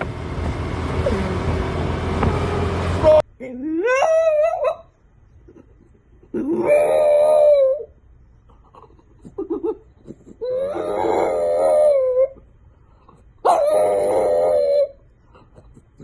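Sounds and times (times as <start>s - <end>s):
dog yipping: 3.8s - 5.6s, 6.4s - 7.9s, 8.9s - 12.5s, 13.4s - 15.0s
dog howling: 6.4s - 7.9s, 10.4s - 12.4s, 13.4s - 15.0s.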